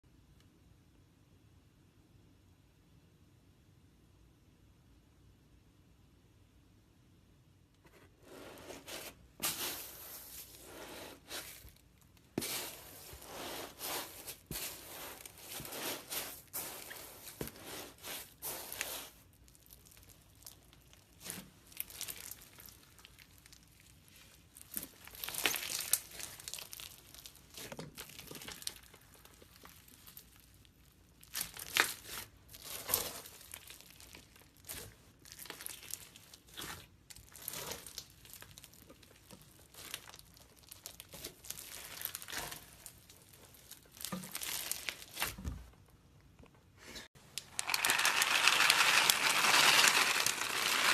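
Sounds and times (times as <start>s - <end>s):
slime squishing and popping: 19.4s - 45.4s.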